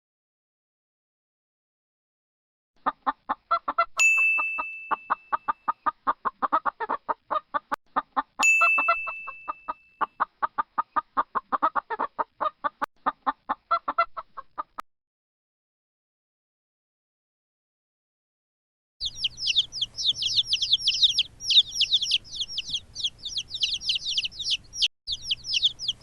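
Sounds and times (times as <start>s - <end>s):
chicken clucking: 2.8s - 14.8s, 19.0s - 26.0s
bright bell ding: 4.0s - 5.5s, 8.4s - 10.0s.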